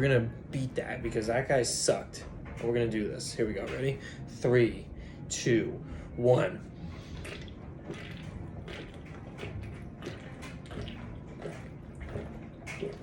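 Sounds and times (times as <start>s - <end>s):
man gulping and swallowing: 7.1s - 13.0s.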